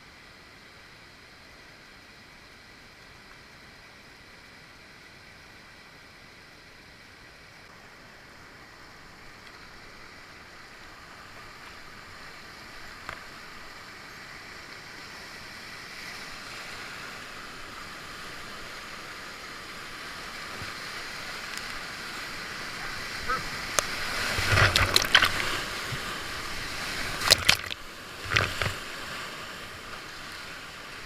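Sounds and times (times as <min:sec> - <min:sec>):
whitewater rapids rushing: 0:16.5 - 0:31.0.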